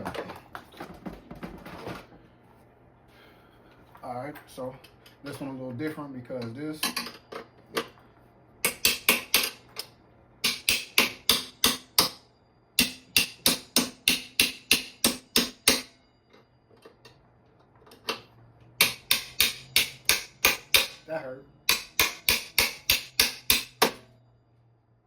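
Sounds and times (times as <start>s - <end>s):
hammer tapping on metal: 8.6s - 12.2s, 12.8s - 16.0s, 18.8s - 21.1s, 21.7s - 24.1s.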